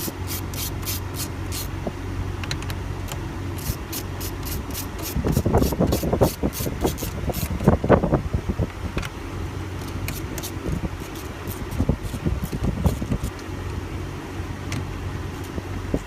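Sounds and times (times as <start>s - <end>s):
ratchet wrench clicking: 0.0s - 1.7s, 3.6s - 7.6s.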